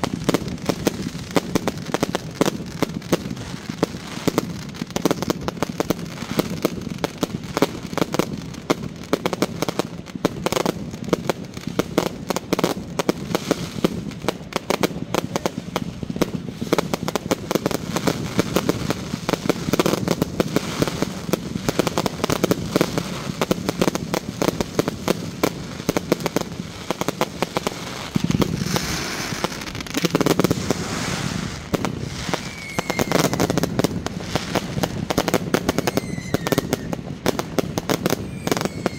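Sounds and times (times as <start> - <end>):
fireworks crackling and banging: 0.0 - 38.9
firework whistle: 27.7 - 38.9.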